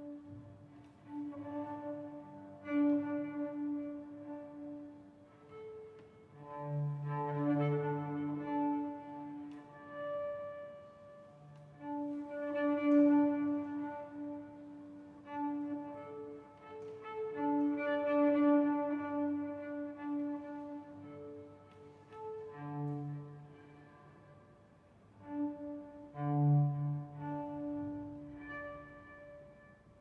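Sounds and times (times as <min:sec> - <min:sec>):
slow bowed string music: 0:00.0 - 0:30.0.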